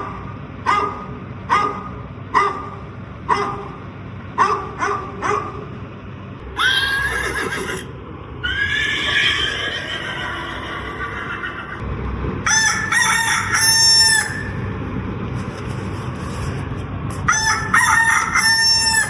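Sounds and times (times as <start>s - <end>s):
dog barking: 0.0s - 3.8s, 4.4s - 5.7s
horse whinnying: 6.6s - 11.8s.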